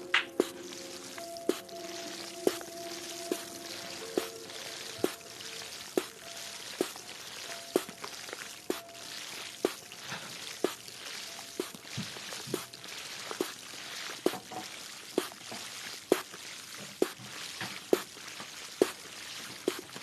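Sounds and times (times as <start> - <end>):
sharp water plink: 0.0 - 10.0, 10.6 - 11.9
water trickling: 0.0 - 20.0.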